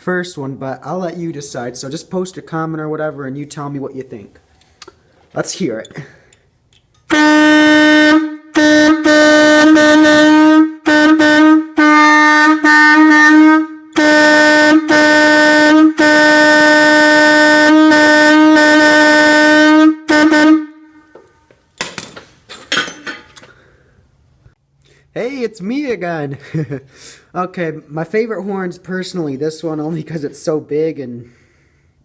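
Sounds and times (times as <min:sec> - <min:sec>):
train air horn blasts: 0:07.1 - 0:21.1.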